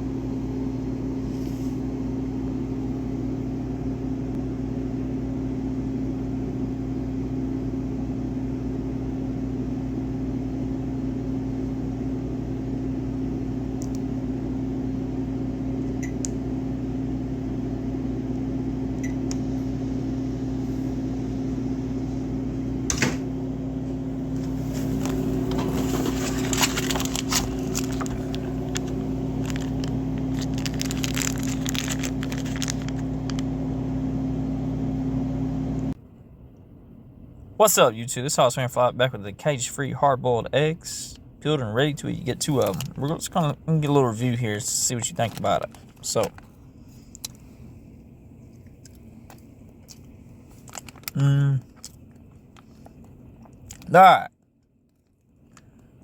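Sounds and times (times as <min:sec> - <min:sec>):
mechanical hum: 0:00.0 - 0:56.0
crackling and rustling: 0:24.4 - 0:33.4.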